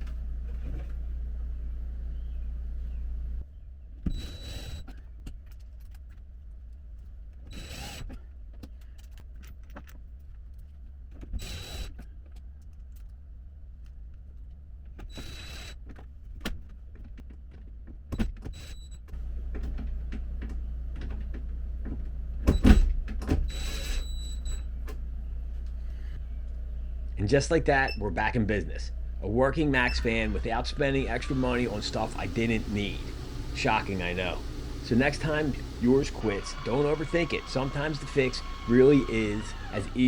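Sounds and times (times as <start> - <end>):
steady low hum: 24.1 - 40.0
small electric motor whirring: 29.8 - 40.0.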